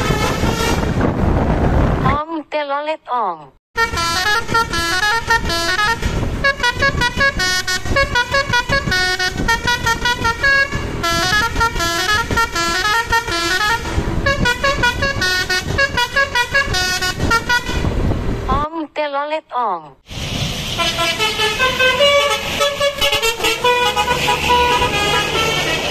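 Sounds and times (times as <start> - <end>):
multi-tone bus horn tune: 0.0 - 1.0, 3.8 - 18.1, 20.7 - 25.9.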